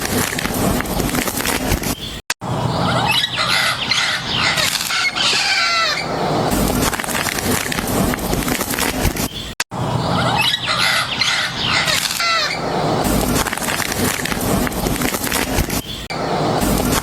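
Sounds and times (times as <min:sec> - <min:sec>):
rustling noise: 0:00.0 - 0:02.2, 0:04.6 - 0:09.6, 0:12.0 - 0:17.0
parrots calling: 0:02.0 - 0:06.5, 0:09.4 - 0:13.2.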